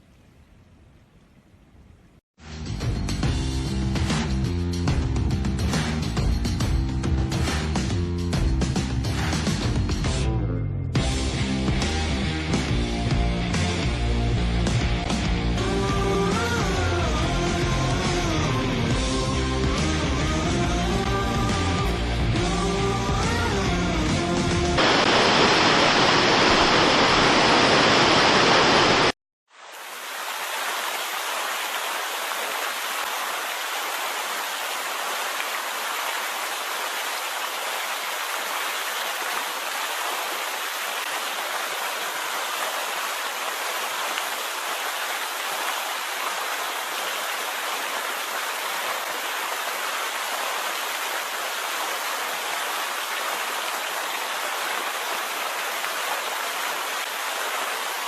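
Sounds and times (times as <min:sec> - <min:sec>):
waterfall rushing: 0:15.6 - 0:58.0.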